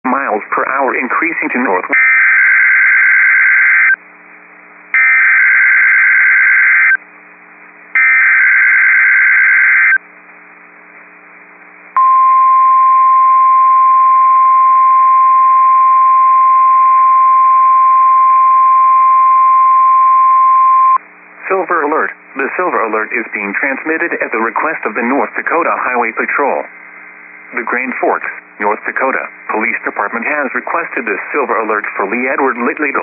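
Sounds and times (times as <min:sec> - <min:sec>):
steady warning alarm tone: 0:08.0 - 0:10.0.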